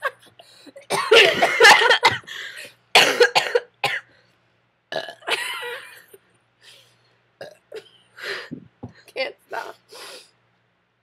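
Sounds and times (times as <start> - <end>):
person burping: 4.9 - 5.5, 7.4 - 7.9.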